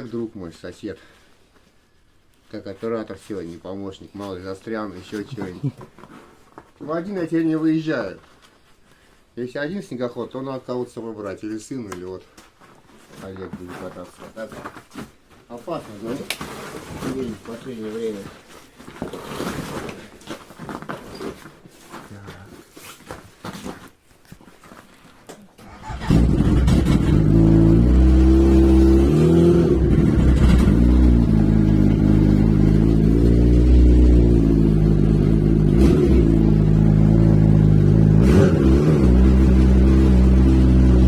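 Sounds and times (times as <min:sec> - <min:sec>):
snowmobile engine running: 0:26.0 - 0:41.0.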